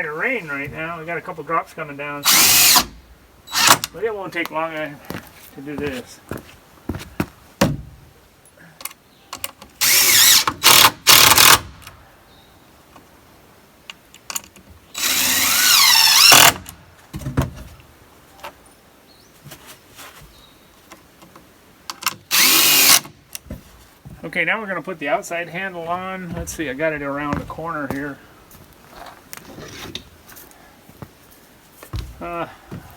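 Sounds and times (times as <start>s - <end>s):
cordless drill driving screws: 2.2s - 3.9s, 9.8s - 11.8s, 15.0s - 16.8s, 22.3s - 23.2s
knocks and handling sounds: 23.2s - 25.0s, 25.8s - 32.9s.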